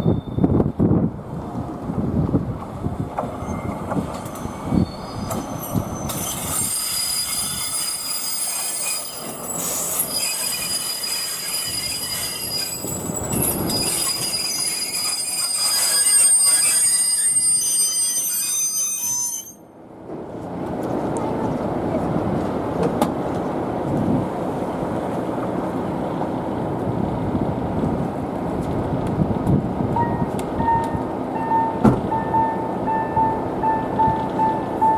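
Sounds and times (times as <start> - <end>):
wheel squeal against rails: 0.0 - 0.6, 3.2 - 19.7, 30.0 - 34.9
freight train rumbling past: 0.0 - 18.4, 19.7 - 34.9.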